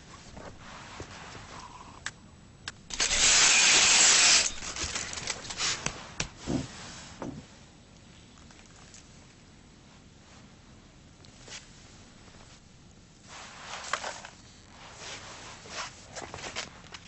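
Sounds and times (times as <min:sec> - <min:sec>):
soft thumps: 0:06.2 - 0:07.5.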